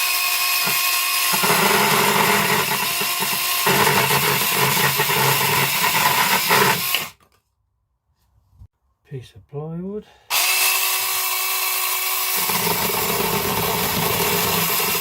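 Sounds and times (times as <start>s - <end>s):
electric chainsaw cutting wood: 0.0s - 7.2s, 10.3s - 15.0s.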